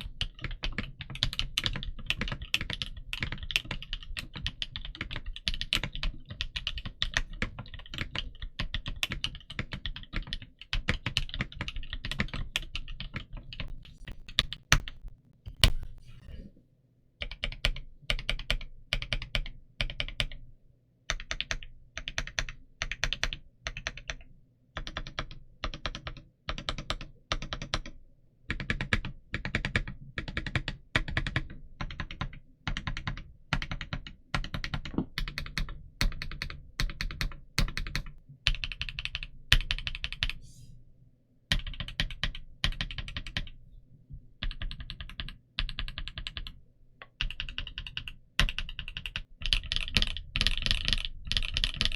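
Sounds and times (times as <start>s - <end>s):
mechanical keyboard typing: 0.0s - 16.2s, 44.4s - 46.5s, 47.1s - 51.9s.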